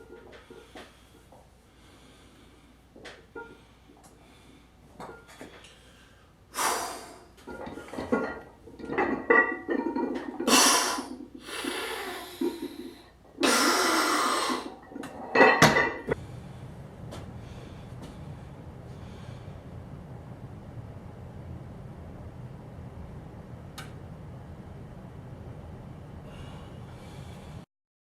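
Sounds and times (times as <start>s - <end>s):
man exhaling forcefully: 6.6s - 7.2s, 10.5s - 12.6s, 13.4s - 14.7s.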